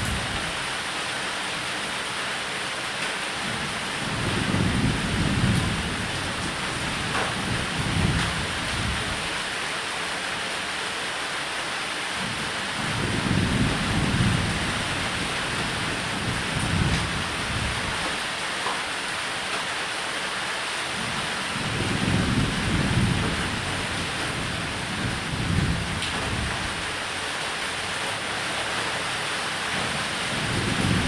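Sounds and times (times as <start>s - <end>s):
thunder rumbling: 0.0s - 0.7s, 4.0s - 9.3s, 21.6s - 27.0s, 30.2s - 31.0s
heavy rain hissing: 0.0s - 31.0s.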